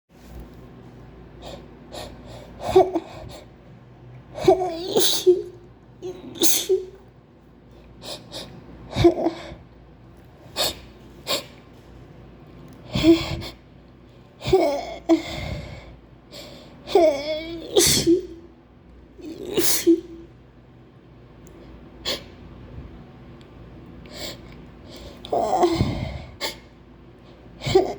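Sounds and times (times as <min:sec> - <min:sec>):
woman sneezing: 0:04.8 - 0:07.0, 0:17.6 - 0:18.4, 0:19.3 - 0:20.2
gasping breaths: 0:24.0 - 0:27.9.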